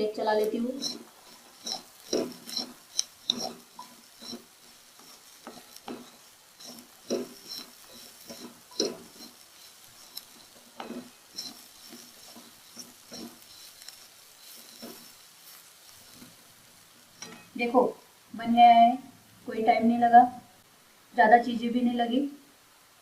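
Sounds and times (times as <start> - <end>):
spatula scraping a frying pan: 0.0 - 17.6
light sizzle: 0.0 - 23.0.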